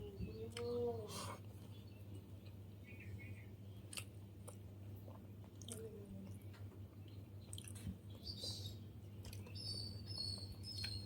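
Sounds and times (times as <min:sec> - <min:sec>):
faint birds chirping: 0:00.0 - 0:11.0
person chewing food: 0:03.8 - 0:08.3, 0:09.2 - 0:09.6.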